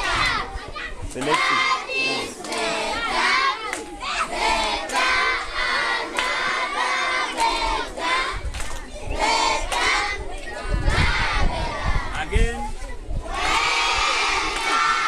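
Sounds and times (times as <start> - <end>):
children shouting together: 1.7 - 4.7.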